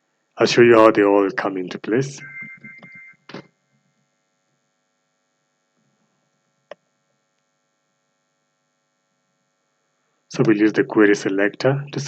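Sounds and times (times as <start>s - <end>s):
faint electrical hum: 0.0s - 3.1s, 9.9s - 12.0s.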